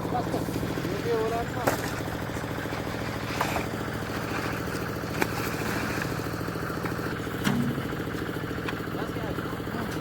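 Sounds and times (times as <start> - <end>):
concrete mixer engine running: 0.0 - 10.0.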